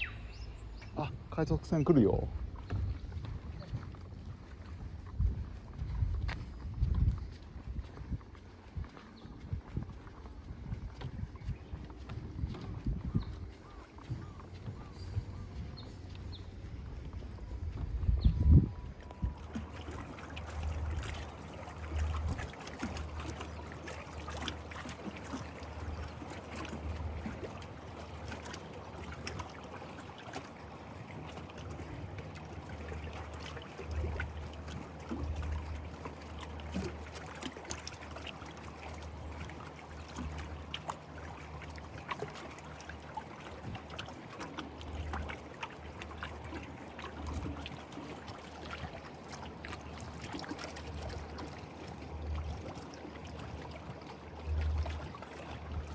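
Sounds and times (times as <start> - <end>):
small waves lapping on shore: 0.0 - 17.6, 18.7 - 55.9
low rumble: 2.2 - 19.8.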